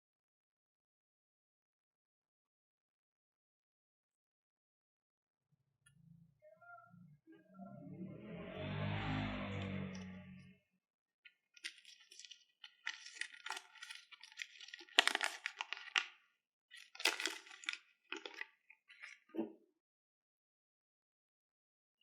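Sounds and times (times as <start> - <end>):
musical tone: 6.6 - 10.5
packaging clicks and crinkles: 11.6 - 16.2, 16.8 - 19.2.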